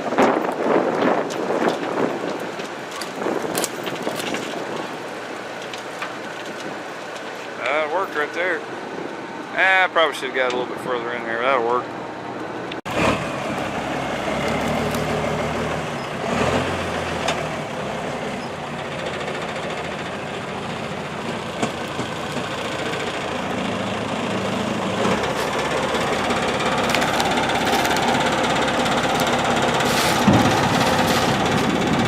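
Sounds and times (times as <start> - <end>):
backhoe diesel engine running: 0.0 - 32.0
metal clanks: 25.1 - 32.0.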